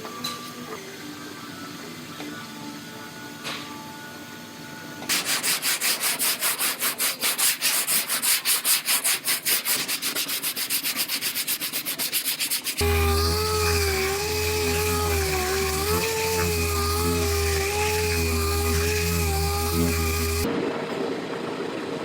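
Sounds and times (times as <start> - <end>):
hand sanding strokes: 5.1 - 20.5
tool hum with wavering pitch: 12.8 - 20.5.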